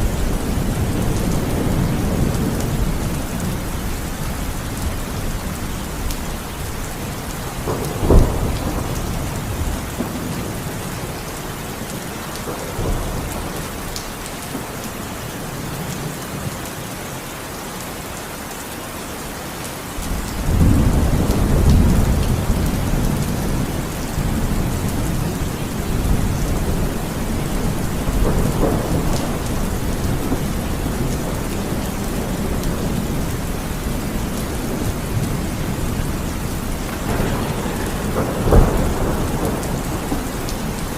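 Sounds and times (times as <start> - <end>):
thunder crack and rumble: 0.0 - 14.9, 20.0 - 40.9
heavy rain falling: 0.0 - 40.9.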